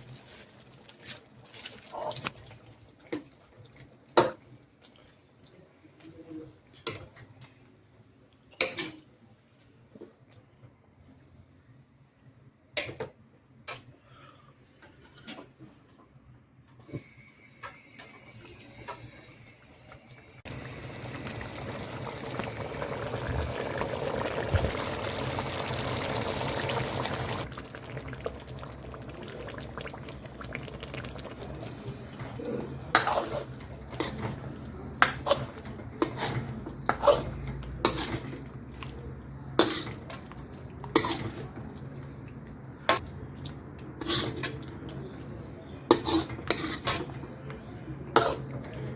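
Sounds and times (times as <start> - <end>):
liquid rushing: 20.5 - 31.1.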